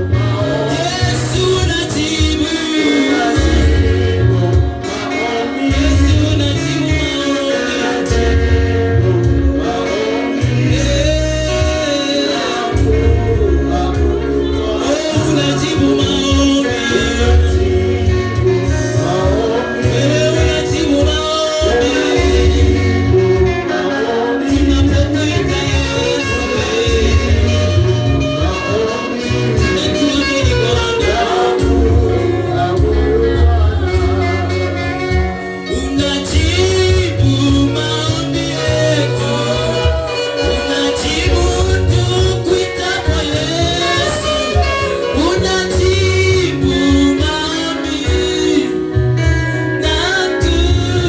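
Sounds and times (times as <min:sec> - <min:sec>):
band playing: 0:00.0 - 0:51.0
deep bass line: 0:00.0 - 0:51.0
voices singing together: 0:00.0 - 0:51.0.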